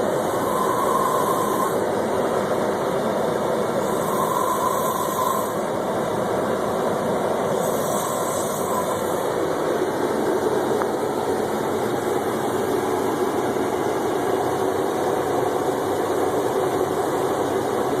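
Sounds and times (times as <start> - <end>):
person snoring: 3.9 - 5.6, 7.6 - 9.0.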